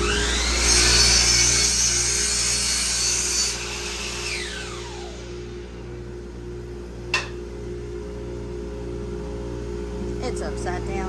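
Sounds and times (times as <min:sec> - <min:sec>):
saw cutting through wood: 0:00.0 - 0:05.6
miter saw motor whine: 0:00.0 - 0:06.7.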